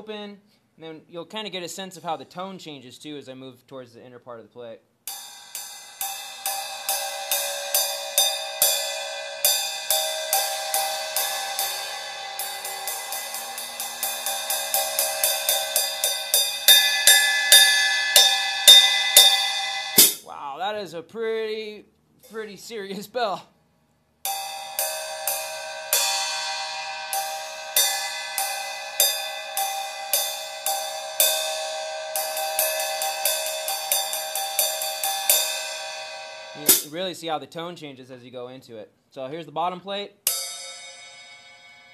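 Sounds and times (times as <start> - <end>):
hi-hats struck with drumstick: 5.1 - 20.4, 24.3 - 37.0, 40.3 - 41.9.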